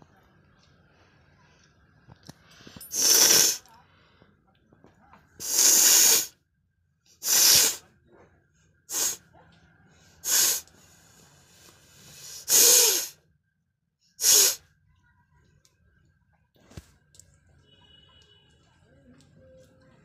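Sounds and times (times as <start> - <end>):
person sneezing: 2.9 - 3.7, 7.2 - 7.8, 12.4 - 13.2.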